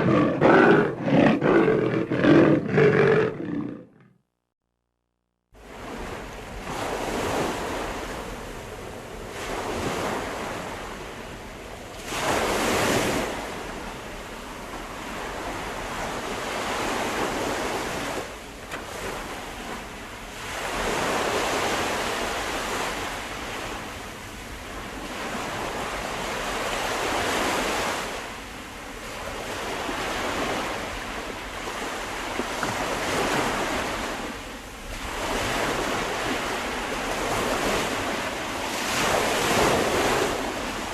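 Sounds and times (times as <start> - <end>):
ocean waves breaking: 29.2 - 40.9.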